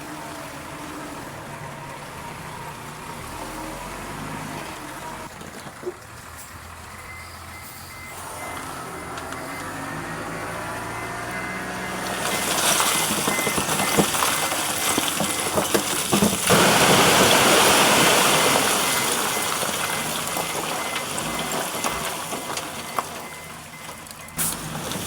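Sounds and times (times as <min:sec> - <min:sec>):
bulldozer diesel engine: 0:00.0 - 0:25.0
sliding stone and gravel: 0:08.1 - 0:25.0
rock knocking clatter: 0:12.2 - 0:16.7.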